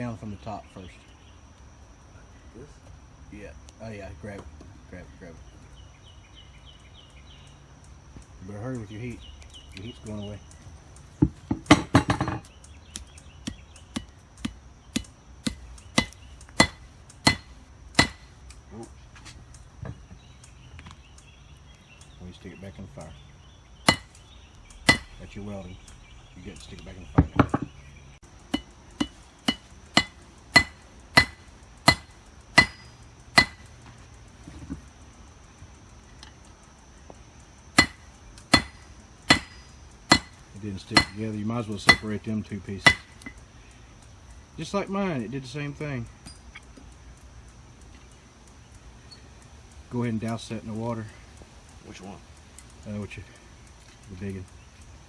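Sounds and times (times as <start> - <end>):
hammer striking metal on anvil: 14.0 - 18.3, 23.9 - 24.2, 24.8 - 25.2, 28.5 - 33.7, 37.8 - 40.4, 41.0 - 41.2, 41.8 - 42.1, 42.8 - 43.4
hammer ringing on anvil: 29.0 - 33.6.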